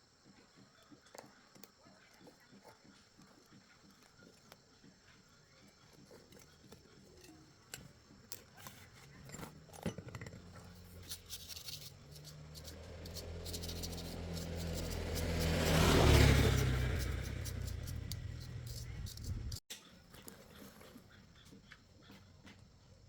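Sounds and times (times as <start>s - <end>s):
vehicle engine passing by: 11.9s - 19.6s.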